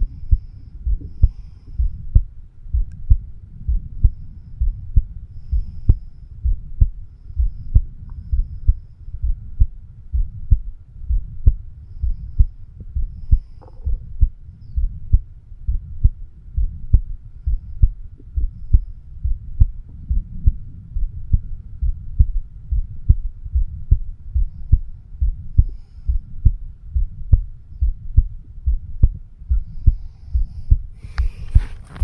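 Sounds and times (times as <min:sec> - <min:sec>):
heartbeat lub-dub: 0:00.0 - 0:32.0
scratchy rubbing noise: 0:31.0 - 0:32.0.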